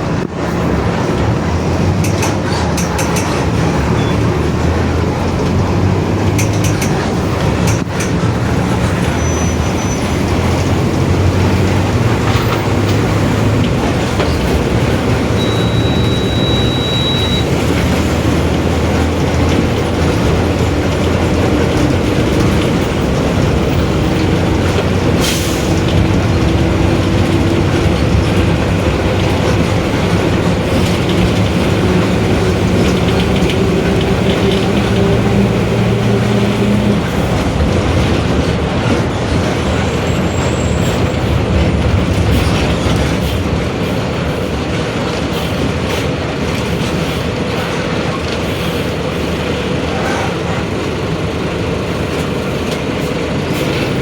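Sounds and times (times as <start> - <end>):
bus diesel engine running: 0.0 - 54.0
sharp clicks: 2.0 - 3.6, 6.3 - 8.2.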